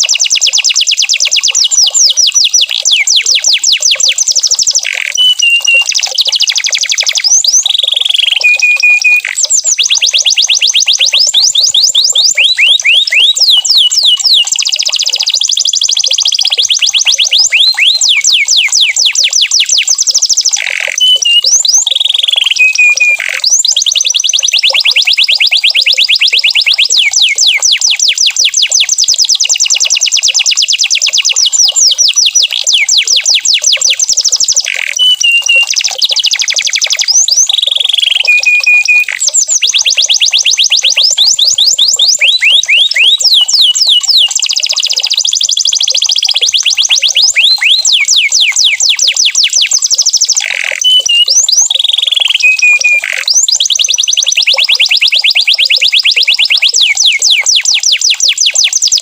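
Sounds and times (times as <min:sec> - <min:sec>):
canary trilling: 0:00.0 - 0:59.0
held whistled notes: 0:05.2 - 0:06.0, 0:08.1 - 0:09.6, 0:22.4 - 0:23.4, 0:35.0 - 0:35.9, 0:38.0 - 0:39.6, 0:50.8 - 0:51.5, 0:52.2 - 0:53.3.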